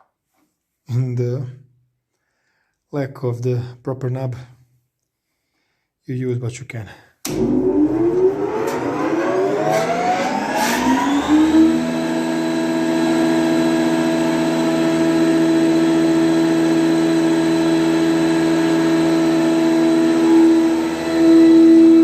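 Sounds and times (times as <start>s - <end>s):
planer motor humming and whining: 7.3s - 22.0s.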